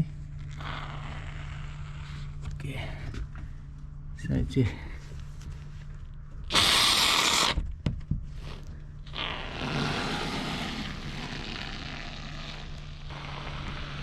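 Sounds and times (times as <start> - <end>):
spray foam can hissing: 6.5 - 7.6.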